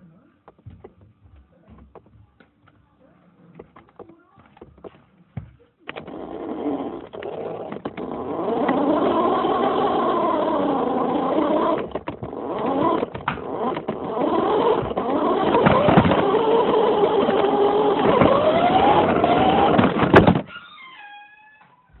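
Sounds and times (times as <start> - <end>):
toy car electric motor whining: 5.9 - 21.3.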